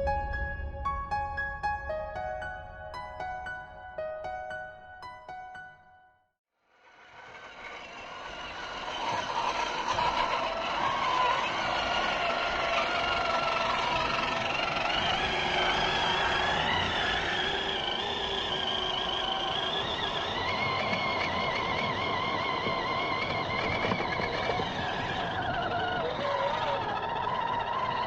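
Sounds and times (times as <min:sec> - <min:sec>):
electric motor and gearbox whining: 0:07.1 - 0:28.0.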